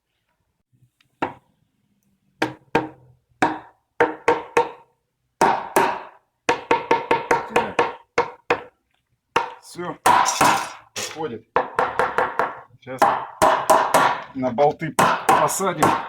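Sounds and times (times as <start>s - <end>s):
knocks on wood: 11.6s - 14.2s.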